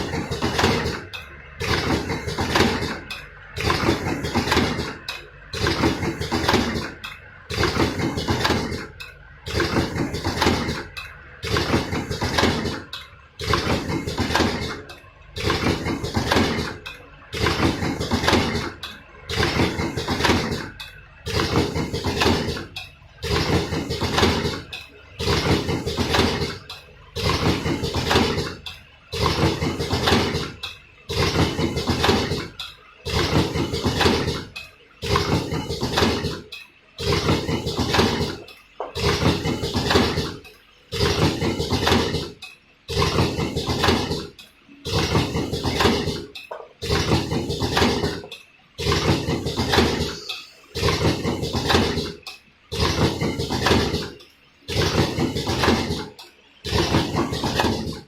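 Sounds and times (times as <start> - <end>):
packing machine clattering: 0.0 - 58.0.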